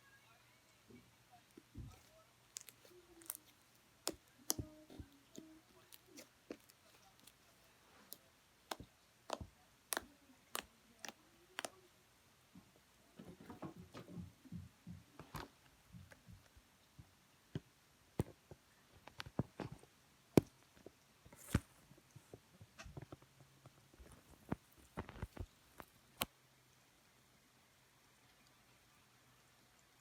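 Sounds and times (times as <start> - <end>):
slime clicking and popping: 2.5 - 7.3, 8.1 - 11.8.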